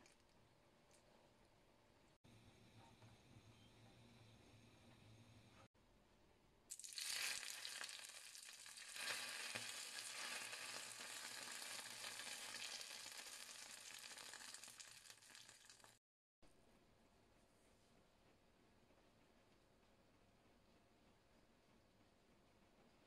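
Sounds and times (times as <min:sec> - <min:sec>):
food sizzling in hot oil: 0:06.7 - 0:16.0.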